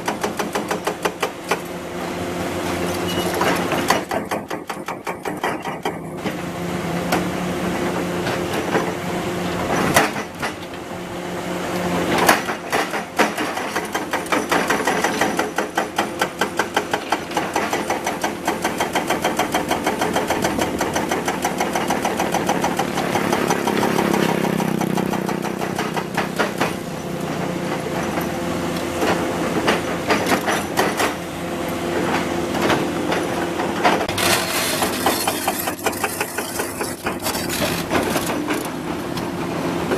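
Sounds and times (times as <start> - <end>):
excavator diesel engine revving: 17.2 - 39.9.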